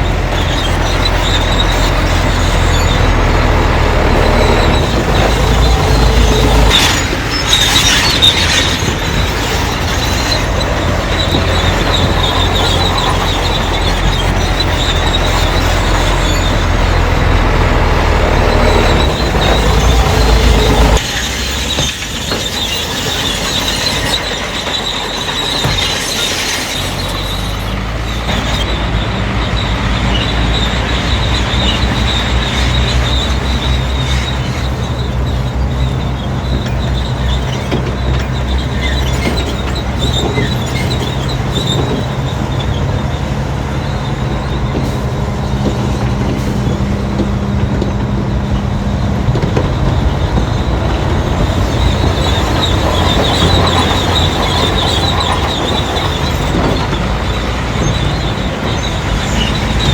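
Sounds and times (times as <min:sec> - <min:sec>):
diesel engine running: 0:00.0 - 0:59.9
steel tracks squealing and clanking: 0:00.0 - 0:59.9.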